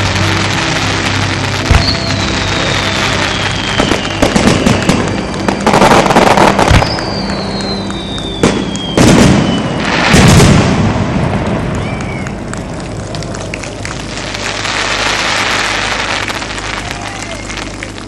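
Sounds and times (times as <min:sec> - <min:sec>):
fireworks bangs and crackling: 0:00.0 - 0:18.0
whistling shells falling whistle: 0:01.7 - 0:09.9.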